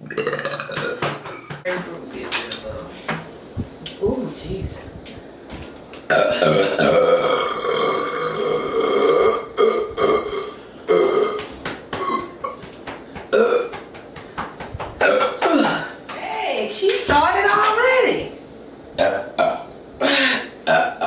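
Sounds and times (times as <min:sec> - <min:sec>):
person burping: 0:00.0 - 0:01.5, 0:06.1 - 0:12.6, 0:13.3 - 0:13.7, 0:15.0 - 0:16.0, 0:19.0 - 0:21.0.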